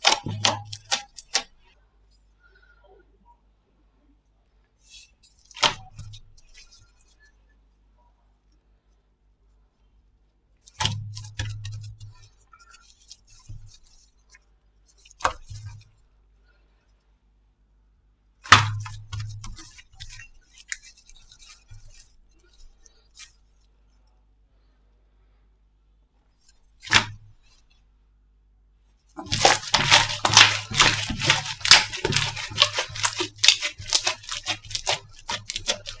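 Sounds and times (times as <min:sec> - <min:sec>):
slime crackling and snapping: 0:00.0 - 0:01.4, 0:29.2 - 0:36.0.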